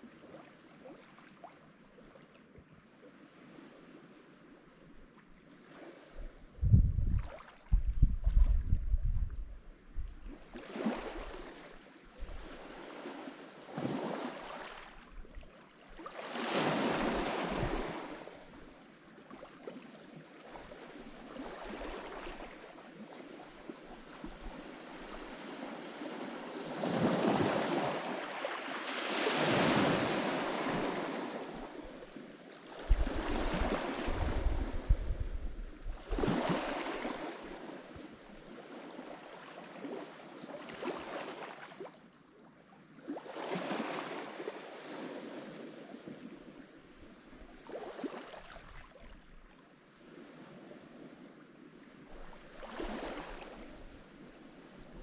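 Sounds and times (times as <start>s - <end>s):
waves breaking on shore: 3.0s - 8.8s, 10.1s - 42.0s, 43.0s - 55.0s
wind buffeting microphone: 6.2s - 10.3s, 32.8s - 36.7s.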